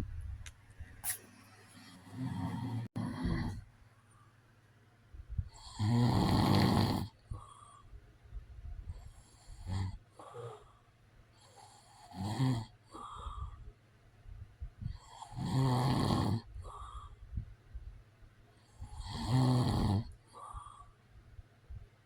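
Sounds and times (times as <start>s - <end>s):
man snoring: 1.9s - 3.6s, 5.6s - 7.5s, 9.2s - 10.8s, 11.4s - 13.4s, 14.9s - 17.0s, 18.8s - 20.8s.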